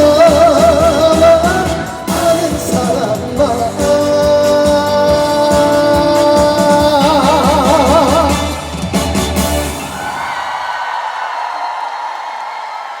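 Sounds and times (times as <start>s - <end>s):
man singing a long note: 0.0s - 8.7s
live band with drums: 0.0s - 10.6s.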